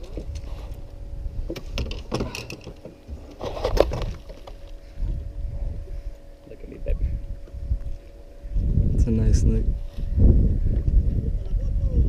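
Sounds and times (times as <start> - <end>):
wind rumble on microphone: 0.0 - 12.0
knocks and handling clatter: 1.5 - 4.6.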